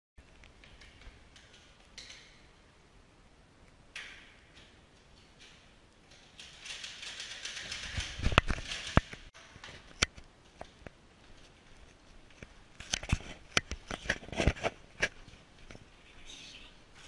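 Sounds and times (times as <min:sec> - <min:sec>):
sharp clicks and knocks: 0:00.2 - 0:02.5, 0:03.9 - 0:11.0.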